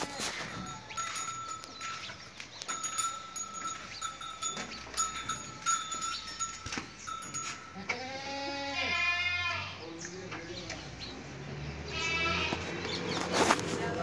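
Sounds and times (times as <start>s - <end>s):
goat bleating: 0.0s - 0.8s, 7.8s - 9.9s, 11.9s - 12.8s.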